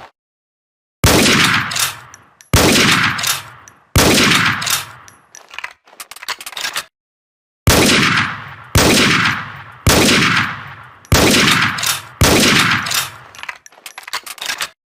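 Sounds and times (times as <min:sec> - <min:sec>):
rifle shots echoing: 0:01.0 - 0:05.1, 0:07.7 - 0:13.4.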